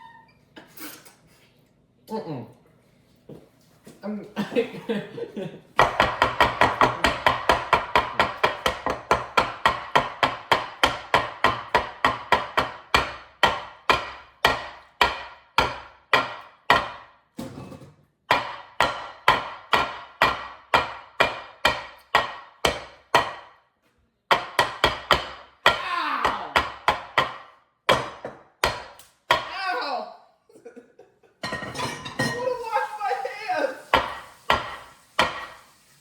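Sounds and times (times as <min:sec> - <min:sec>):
utensil knocking against mixing bowl: 0:05.8 - 0:17.0.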